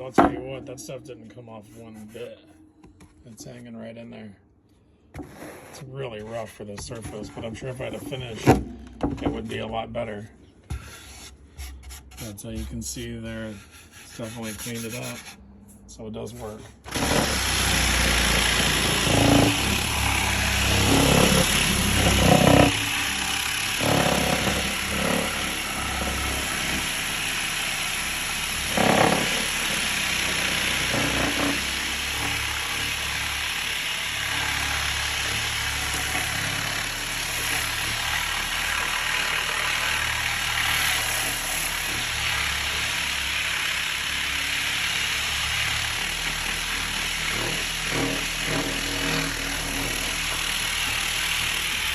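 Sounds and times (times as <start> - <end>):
sandpaper rasping on wood: 10.7 - 15.4
sander motor whirring: 16.8 - 51.9.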